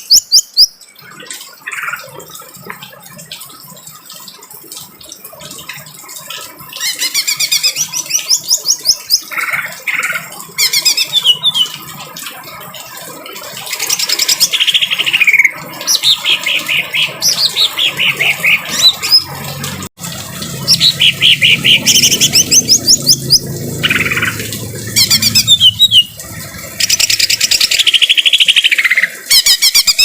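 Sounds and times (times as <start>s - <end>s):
bird singing harsh phrases: 0.0s - 0.8s, 6.8s - 11.9s, 13.8s - 19.3s, 20.7s - 26.2s, 26.8s - 30.0s.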